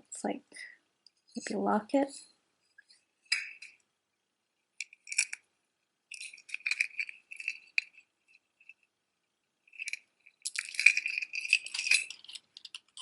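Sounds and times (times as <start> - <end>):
jewelry clinking and rattling: 3.3 - 3.8, 4.8 - 5.5, 6.1 - 8.9, 9.6 - 13.0.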